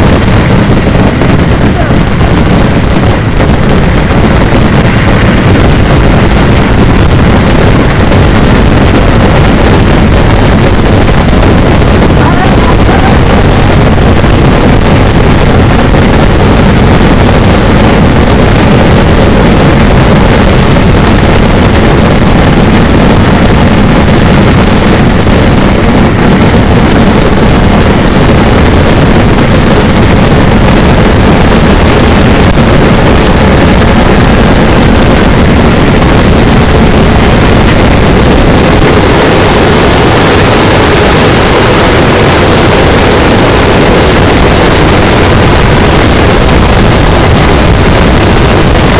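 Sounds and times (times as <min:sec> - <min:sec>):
fireworks barrage roar: 0:00.0 - 0:48.9.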